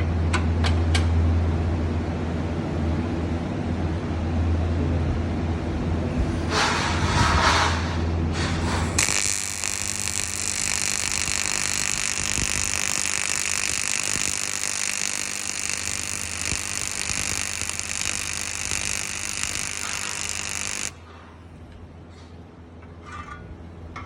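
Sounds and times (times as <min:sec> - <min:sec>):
welding arc crackling and sizzling: 0:08.4 - 0:21.0.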